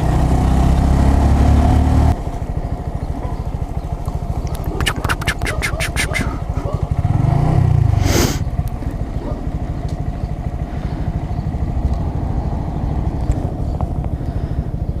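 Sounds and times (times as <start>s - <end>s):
motorcycle engine running: 0.0s - 15.0s.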